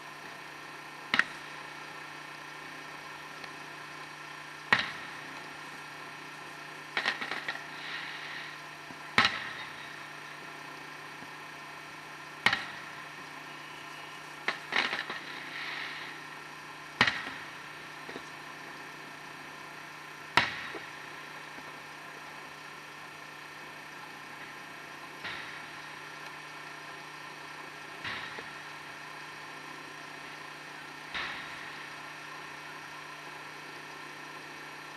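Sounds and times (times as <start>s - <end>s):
fireworks crackle: 6.4s - 11.4s, 12.5s - 19.6s.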